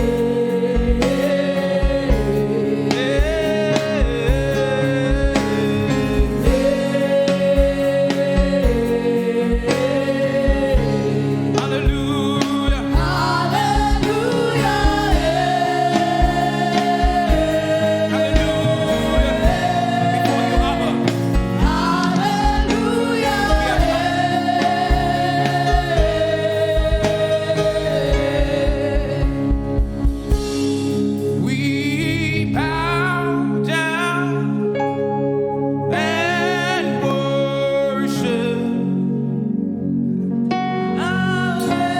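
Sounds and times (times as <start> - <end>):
bass: 0.0 - 41.9
drum beat: 3.1 - 31.1.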